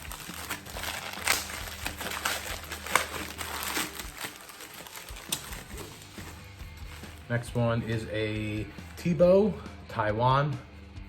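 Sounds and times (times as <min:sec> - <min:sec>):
plastic packing crinkling: 0:00.0 - 0:07.4.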